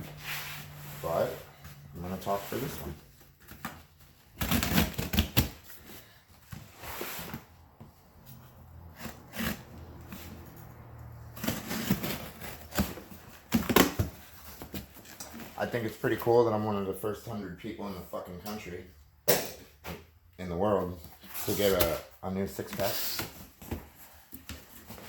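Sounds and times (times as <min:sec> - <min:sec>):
cardboard box rustling and scraping: 0:04.5 - 0:10.4, 0:11.3 - 0:15.6.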